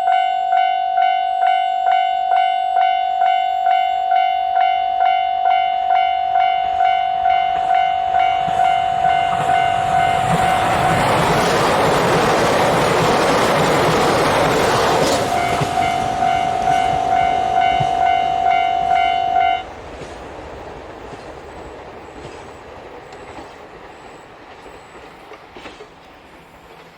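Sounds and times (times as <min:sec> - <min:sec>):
level-crossing warning bell: 0:00.0 - 0:19.7
train rushing and rail clatter: 0:05.5 - 0:26.9.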